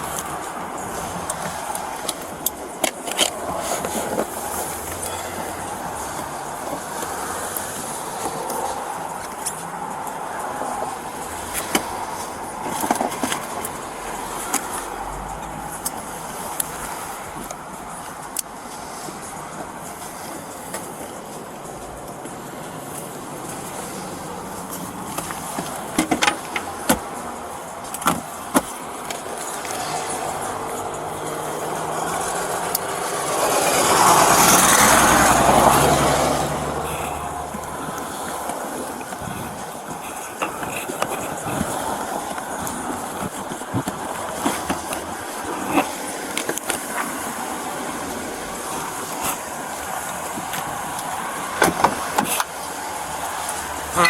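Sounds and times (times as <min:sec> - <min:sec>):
traffic noise: 0:00.0 - 0:54.0
vehicle passing by: 0:00.0 - 0:54.0
low engine hum: 0:13.4 - 0:40.3.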